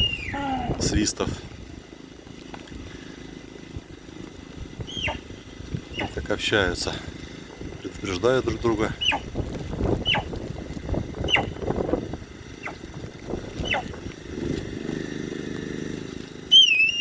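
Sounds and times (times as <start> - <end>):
deer whistling: 0.0 - 0.5, 4.8 - 6.2, 8.9 - 9.3, 10.0 - 10.3, 11.2 - 11.6, 12.6 - 12.8, 13.6 - 13.9, 16.5 - 17.0.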